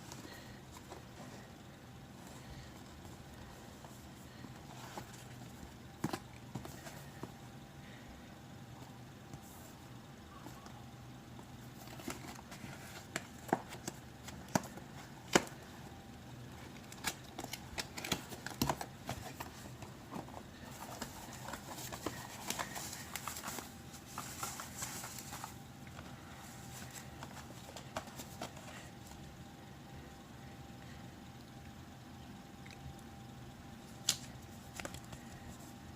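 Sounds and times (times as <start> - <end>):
packaging rustling: 16.7 - 29.2.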